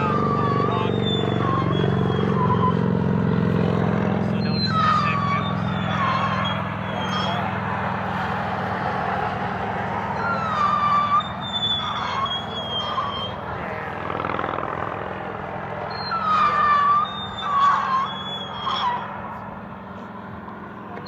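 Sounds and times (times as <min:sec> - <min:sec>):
whistling firework squeals: 0:00.0 - 0:03.0, 0:04.2 - 0:07.6, 0:10.0 - 0:13.6, 0:15.8 - 0:19.5.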